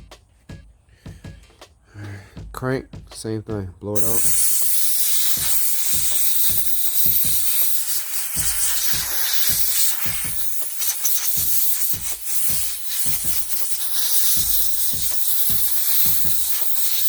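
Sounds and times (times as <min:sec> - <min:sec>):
compressed air blowgun hissing: 0:04.0 - 0:17.0.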